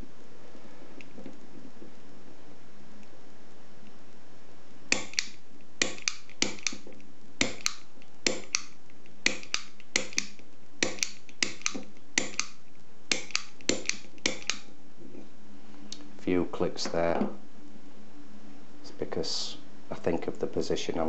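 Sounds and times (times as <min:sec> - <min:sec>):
pick gun snapping clicks: 0:04.9 - 0:06.8, 0:07.4 - 0:14.7.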